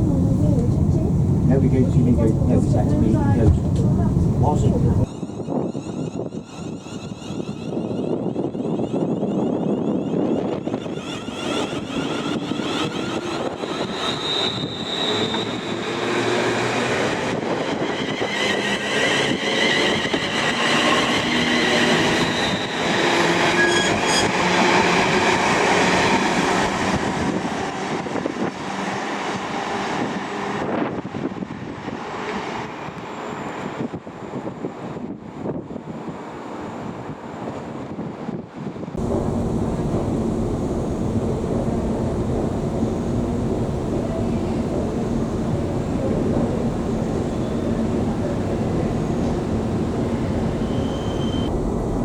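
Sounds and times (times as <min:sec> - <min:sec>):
train rolling on rails: 0:00.0 - 0:52.0
high wavering wheel squeal: 0:05.1 - 0:34.0, 0:44.0 - 0:52.0.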